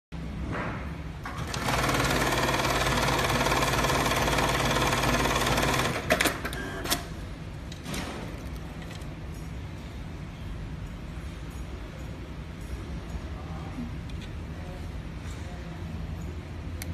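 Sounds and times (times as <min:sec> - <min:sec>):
low machine hum: 0:00.2 - 0:16.9
sewing machine stitching: 0:01.3 - 0:07.0.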